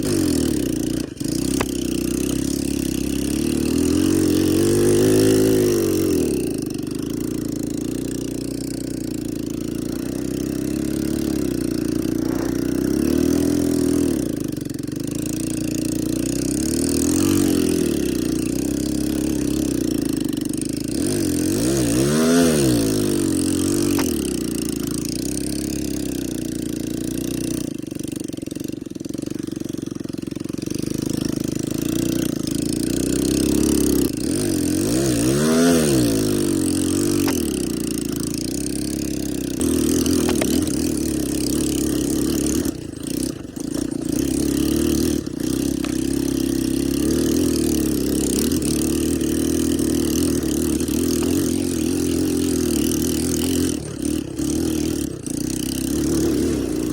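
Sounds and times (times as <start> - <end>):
atv engine revving: 0.0 - 56.9.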